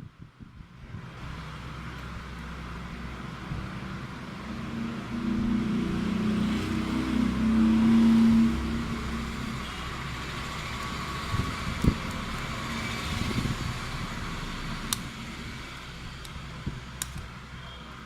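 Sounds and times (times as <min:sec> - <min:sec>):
low hum: 0:00.0 - 0:17.3
small sharp clicks: 0:17.0 - 0:17.3.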